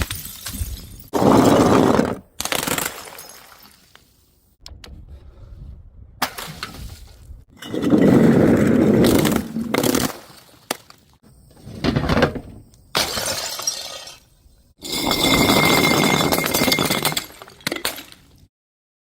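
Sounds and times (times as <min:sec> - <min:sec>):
glass bottles smashing: 0:00.0 - 0:01.7, 0:02.5 - 0:03.9, 0:13.0 - 0:18.3.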